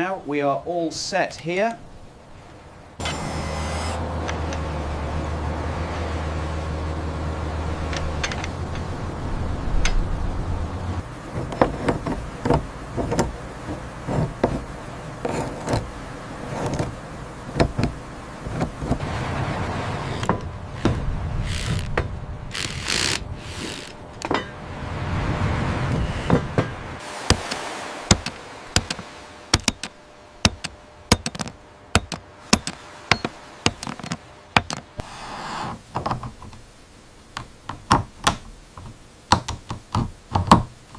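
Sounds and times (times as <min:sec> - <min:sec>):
low steady rumble: 0:01.8 - 0:35.2
knocks and taps of repair work: 0:11.3 - 0:14.7, 0:17.5 - 0:19.0, 0:28.1 - 0:34.9, 0:37.4 - 0:40.8.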